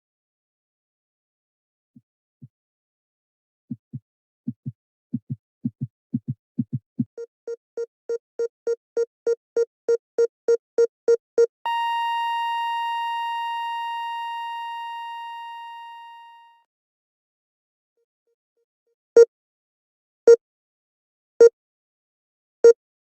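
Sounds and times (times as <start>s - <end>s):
heartbeat lub-dub: 3.7s - 7.2s
heart monitor beeps: 6.7s - 13.5s
flatline monitor tone: 11.7s - 16.6s.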